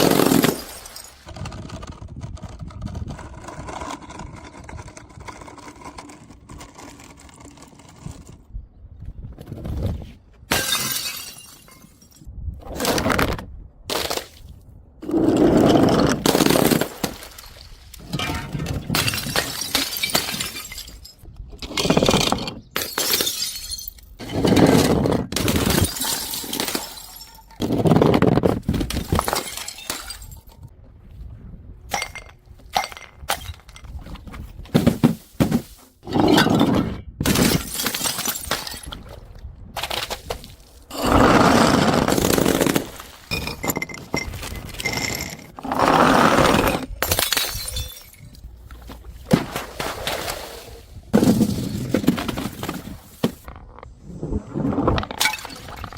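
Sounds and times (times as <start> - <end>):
glass bottles shattering: 0.0 - 1.3, 10.5 - 12.3, 16.3 - 27.6, 28.8 - 30.7, 31.9 - 33.9, 37.3 - 39.0, 42.3 - 45.6, 46.8 - 48.5, 55.2 - 55.9.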